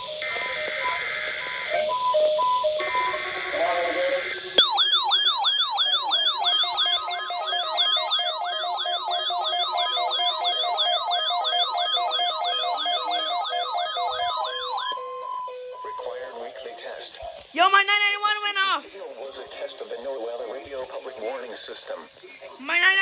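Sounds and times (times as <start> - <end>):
siren alarm wailing: 0.0 - 3.6, 4.5 - 16.2
steady alarm tone: 0.0 - 3.6, 4.4 - 16.2.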